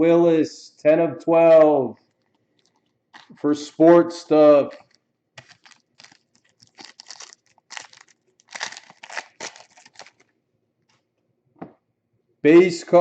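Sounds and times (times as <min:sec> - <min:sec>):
plastic packaging crinkling: 0:01.5 - 0:03.6, 0:04.6 - 0:10.4.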